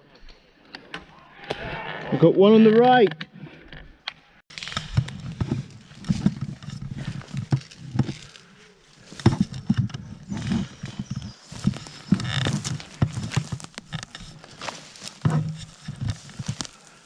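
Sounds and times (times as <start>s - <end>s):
footsteps in undergrowth: 4.5s - 17.0s
heavy breathing: 12.7s - 17.0s.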